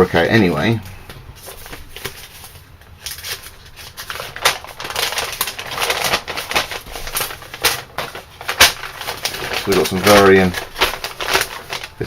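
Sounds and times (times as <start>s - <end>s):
paper crinkling and rustling: 0.4s - 12.0s.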